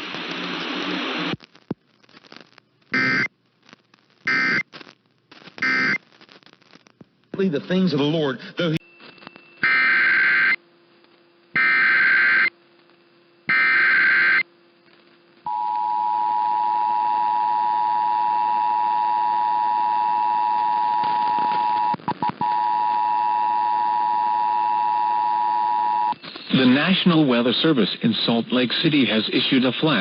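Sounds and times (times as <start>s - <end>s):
digital data bursts: 2.9s - 3.3s, 4.2s - 4.6s, 5.6s - 6.0s.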